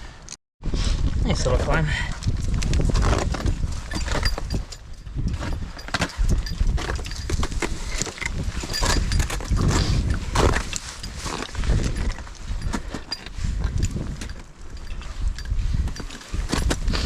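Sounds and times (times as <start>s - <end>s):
wind rumble on microphone: 0.6s - 17.0s
climbing gear clinking: 2.2s - 17.0s.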